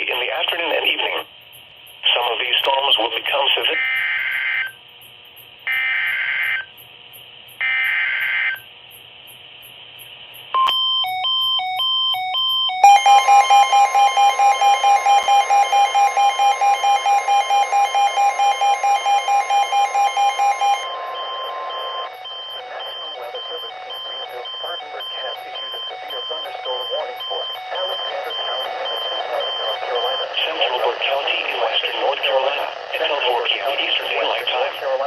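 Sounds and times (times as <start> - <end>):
warbling two-pitch alert tone: 12.8 - 23.4
pulsing attention tone: 12.8 - 24.5
screeching data bursts: 12.8 - 27.2
quiet beeping: 12.8 - 30.2.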